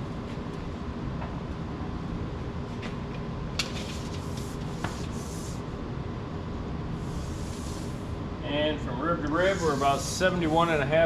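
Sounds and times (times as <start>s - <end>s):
rubbing hiss: 4.0s - 5.6s, 7.0s - 8.1s, 9.4s - 10.7s.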